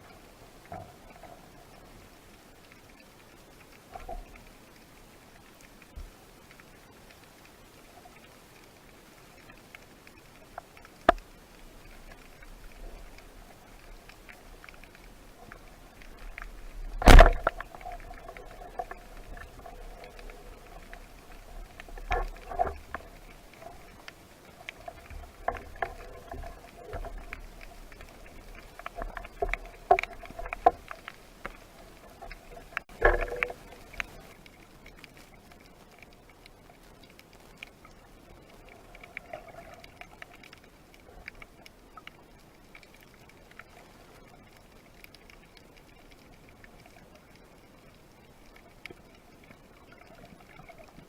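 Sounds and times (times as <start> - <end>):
underwater clicks and knocks: 10.5 - 34.4.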